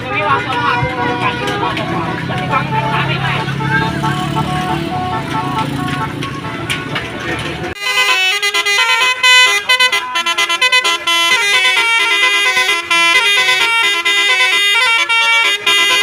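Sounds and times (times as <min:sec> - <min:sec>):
multi-tone air horns playing melody: 0:00.0 - 0:06.9, 0:07.8 - 0:16.0.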